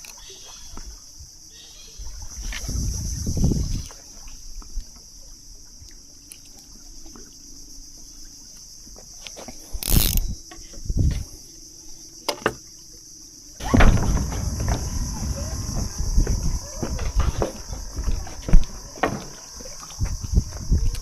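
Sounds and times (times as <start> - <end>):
high-pitched insect chorus: 0.0 - 21.0
short thumps and rustles: 13.6 - 19.4.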